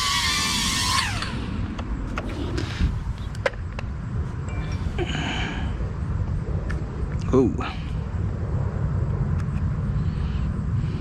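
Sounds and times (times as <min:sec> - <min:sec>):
quadcopter motors whining: 0:00.0 - 0:03.4
wind noise on microphone: 0:00.0 - 0:11.0.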